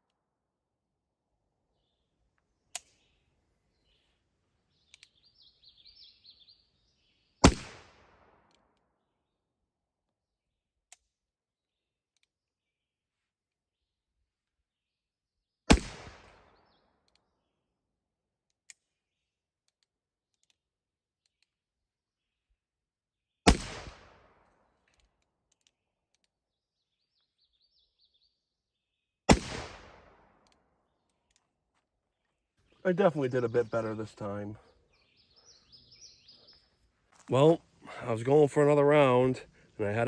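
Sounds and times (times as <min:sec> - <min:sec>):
revolver gunshots with echo: 0:07.4 - 0:08.4, 0:15.7 - 0:16.7, 0:23.5 - 0:24.5, 0:29.3 - 0:30.4.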